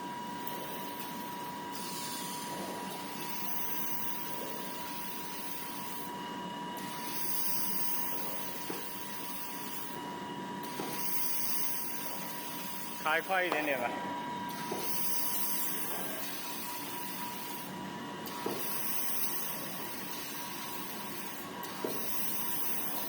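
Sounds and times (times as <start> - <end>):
machine hissing: 1.7 - 2.5.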